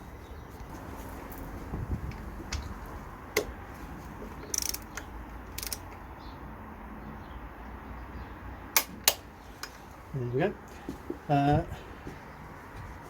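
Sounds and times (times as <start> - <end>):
sharp clicks and knocks: 4.2 - 6.0
ratchet wrench clicking: 4.4 - 6.0.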